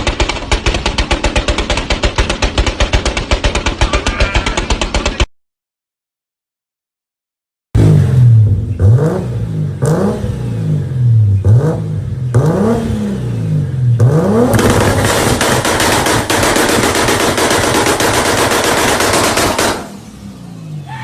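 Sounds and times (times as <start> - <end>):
exhaust pops and bangs: 0.0 - 5.3, 14.0 - 19.9
car engine revving: 7.8 - 20.8.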